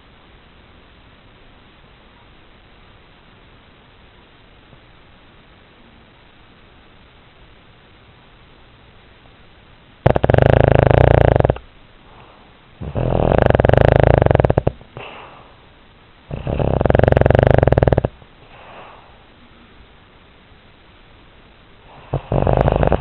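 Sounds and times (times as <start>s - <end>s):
pet snoring: 10.0s - 11.6s, 12.8s - 15.5s, 16.3s - 19.0s, 21.8s - 23.0s
soft breath: 12.0s - 13.0s, 14.7s - 15.7s, 18.4s - 19.6s, 21.8s - 23.0s.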